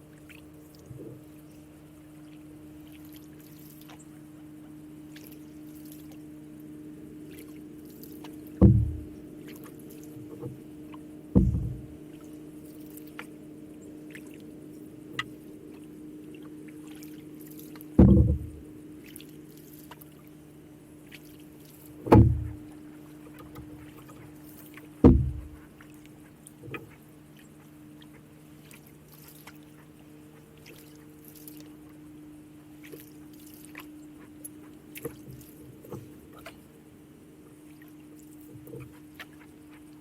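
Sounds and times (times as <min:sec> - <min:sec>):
steady low hum: 0:00.0 - 0:40.0
canoe paddle thuds: 0:08.6 - 0:09.2, 0:11.3 - 0:12.0, 0:17.9 - 0:18.7, 0:22.0 - 0:22.7, 0:25.0 - 0:25.6.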